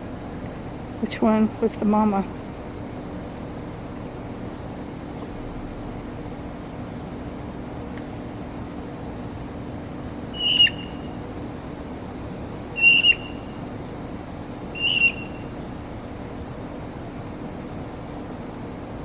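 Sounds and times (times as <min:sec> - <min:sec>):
low background hum: 0:00.0 - 0:19.0
bird whistled calls: 0:10.3 - 0:11.2, 0:12.8 - 0:13.6, 0:14.8 - 0:15.5.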